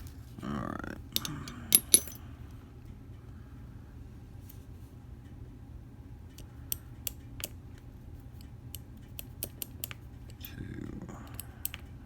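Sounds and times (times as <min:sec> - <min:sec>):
metallic clicks of padlock parts: 0:01.2 - 0:02.2, 0:08.4 - 0:10.5, 0:11.3 - 0:11.9.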